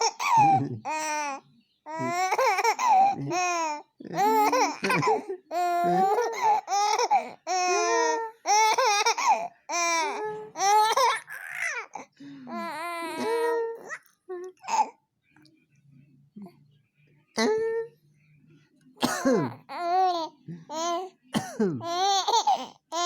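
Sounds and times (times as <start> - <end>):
baby laughing and babbling: 0.0 - 12.0, 12.6 - 14.9, 19.7 - 21.1, 21.8 - 23.0.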